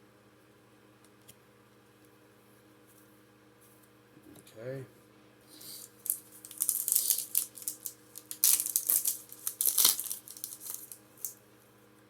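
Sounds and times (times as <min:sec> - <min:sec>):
foil wrapper crinkling and tearing: 0:05.6 - 0:11.4.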